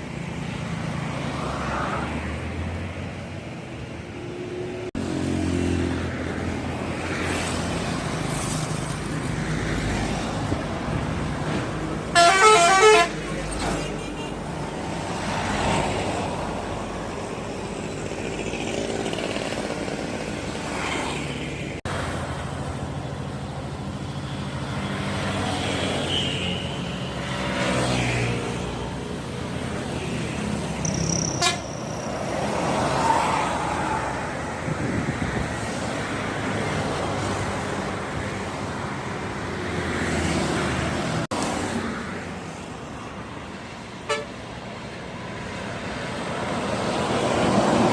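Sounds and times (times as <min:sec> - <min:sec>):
buses and trucks passing: 0:00.0 - 0:47.9
vehicle horn toots: 0:12.1 - 0:13.2, 0:31.1 - 0:32.1, 0:44.1 - 0:44.3.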